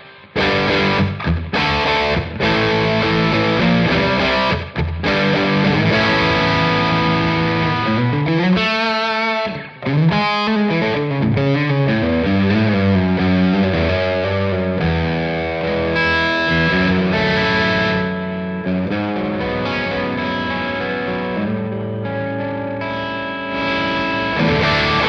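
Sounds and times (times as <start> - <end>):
fuzzy electric guitar: 0.0 - 25.0.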